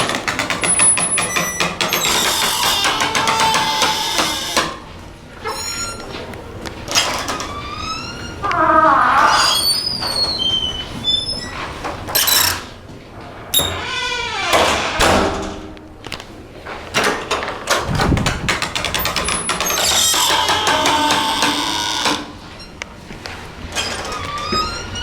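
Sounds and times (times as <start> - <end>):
creaking doors: 0.0 - 15.8, 16.6 - 25.0.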